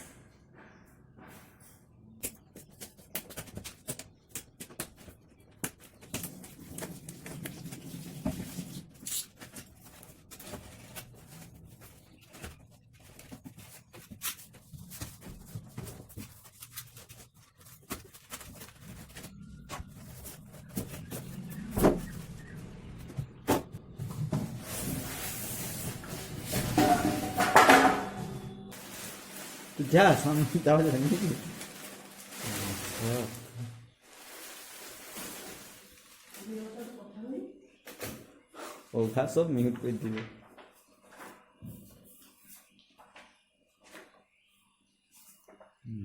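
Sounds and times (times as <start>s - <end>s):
packaging clicks and rustles: 9.0s - 21.5s.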